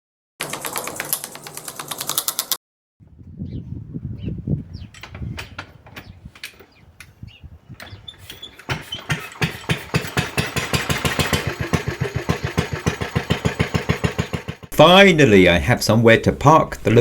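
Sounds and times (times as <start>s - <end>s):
small locomotive engine running: 8.6s - 14.7s.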